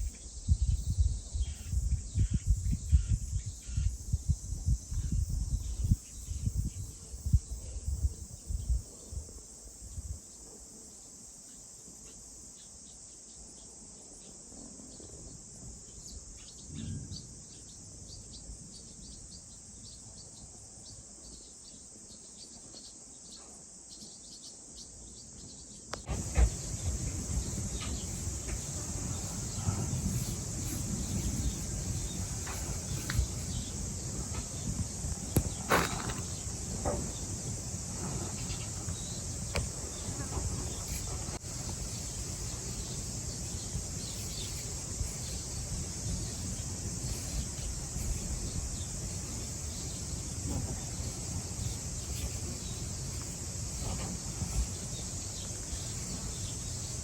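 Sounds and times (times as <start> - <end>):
insects chirring: 0.0 - 57.0
low rumbles and thumps: 26.1 - 41.8.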